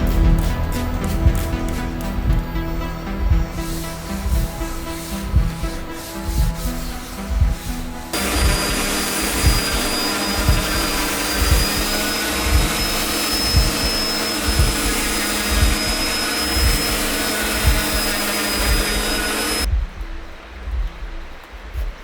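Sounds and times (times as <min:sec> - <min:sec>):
electric motor whining: 0:08.1 - 0:19.7.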